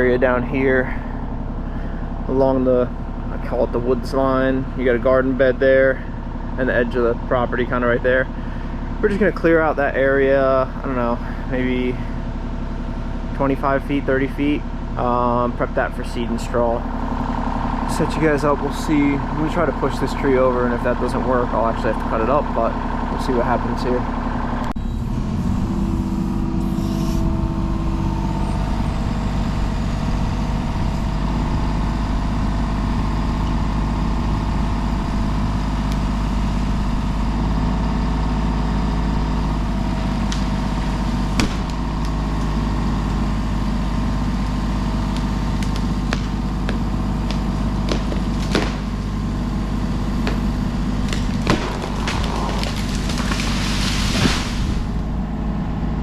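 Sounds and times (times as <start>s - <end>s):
excavator diesel engine running: 0.0s - 56.0s
sharp knocks: 45.7s - 48.9s, 51.1s - 53.5s.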